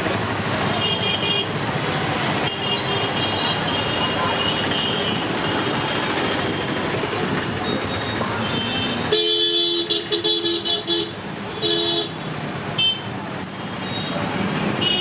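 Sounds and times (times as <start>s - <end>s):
road traffic noise: 0.0s - 15.0s
vehicle horn honking: 8.4s - 12.2s, 14.8s - 15.0s.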